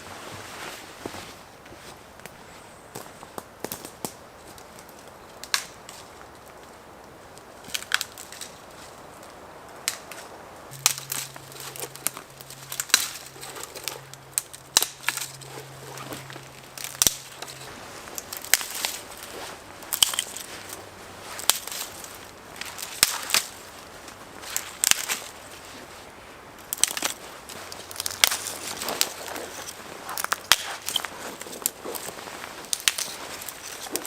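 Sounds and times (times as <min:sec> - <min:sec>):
dry leaves and twigs crunching: 0:00.0 - 0:34.0.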